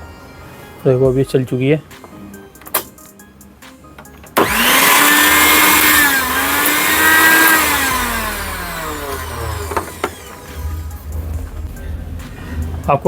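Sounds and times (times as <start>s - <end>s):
mixer grinder motor whining: 4.4s - 10.8s.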